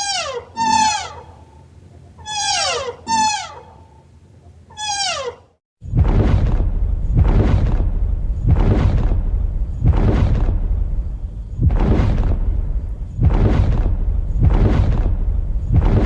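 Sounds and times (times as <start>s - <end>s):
animal calls falling in pitch: 0.0s - 1.6s, 2.2s - 4.0s, 4.7s - 5.6s
rough pulsing animal sound: 0.0s - 16.0s.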